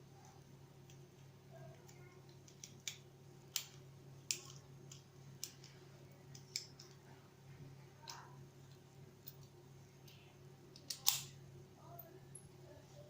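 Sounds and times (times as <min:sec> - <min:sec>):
lock picks clicking in padlock: 0:10.7 - 0:11.4.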